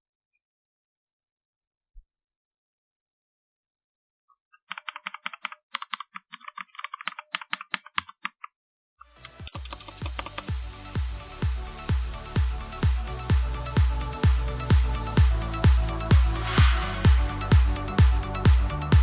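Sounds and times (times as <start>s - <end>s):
mechanical keyboard key clicks: 4.7s - 8.5s
electronic dance music: 9.2s - 19.0s.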